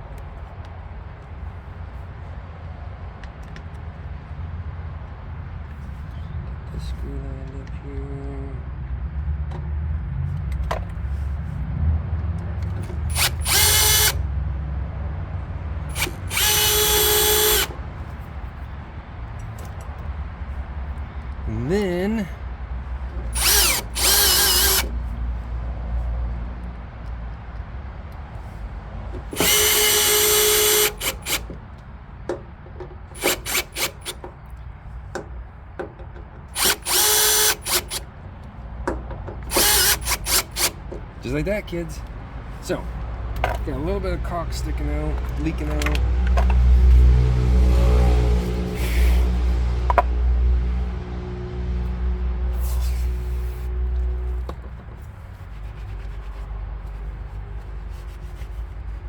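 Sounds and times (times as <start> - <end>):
cordless drill driving screws: 12.8 - 14.2, 15.9 - 17.8, 23.4 - 25.0, 29.3 - 31.6, 33.2 - 34.2, 36.6 - 38.0, 39.5 - 40.8.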